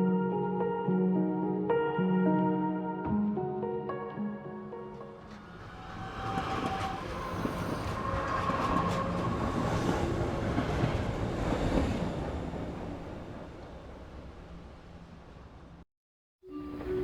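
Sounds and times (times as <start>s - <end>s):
train rumbling on rails: 5.2s - 15.8s.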